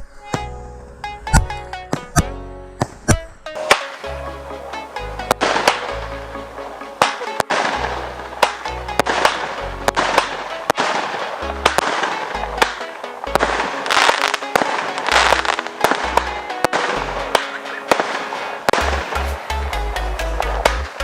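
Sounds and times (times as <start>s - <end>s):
background music with bass: 0.0s - 21.0s
fireworks bangs and crackling: 3.6s - 4.2s, 5.2s - 21.0s.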